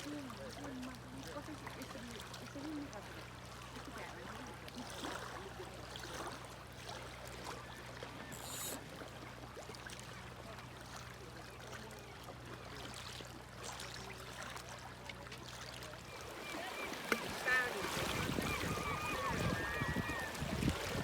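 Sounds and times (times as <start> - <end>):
river water rushing: 16.1 - 21.0.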